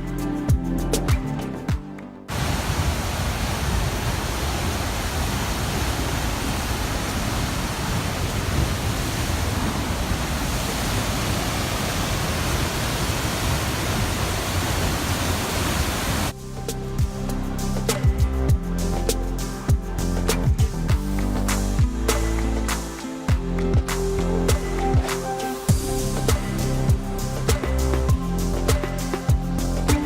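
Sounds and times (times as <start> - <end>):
waterfall rushing: 2.3 - 16.3.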